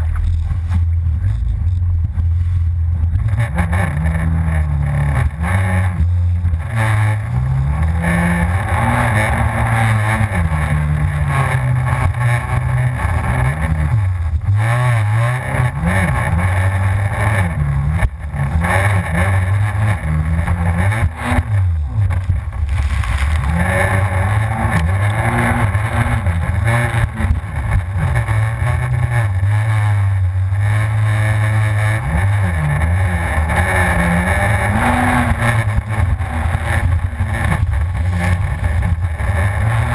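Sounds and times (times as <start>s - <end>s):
personal watercraft engine revving: 14.6s - 39.9s.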